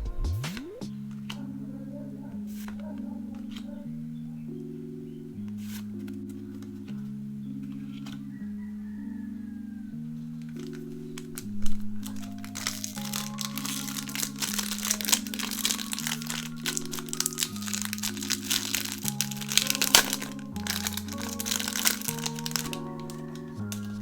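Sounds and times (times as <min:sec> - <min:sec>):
background music of held chords: 0:00.0 - 0:24.0
packaging crinkling: 0:10.4 - 0:24.0.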